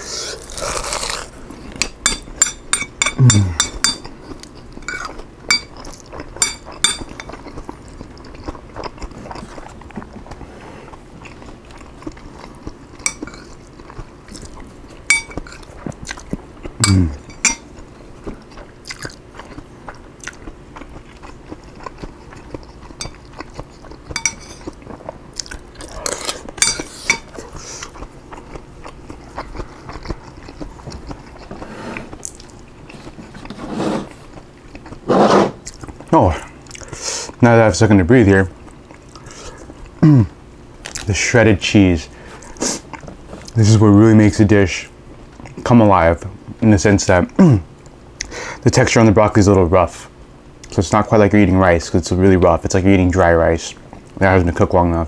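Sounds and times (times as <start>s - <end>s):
person chewing and crunching: 0.0s - 33.4s, 34.3s - 37.4s, 38.6s - 41.2s.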